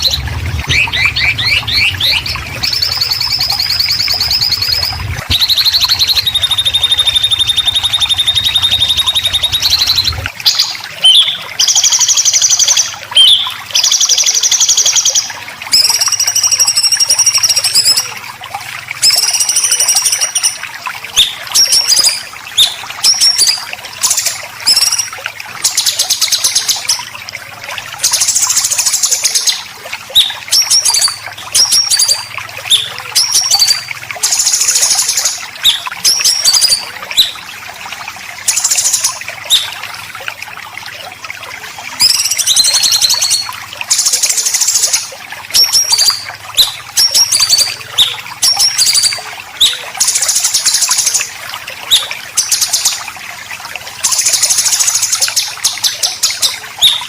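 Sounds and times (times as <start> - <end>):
low hum: 0.0 - 10.2.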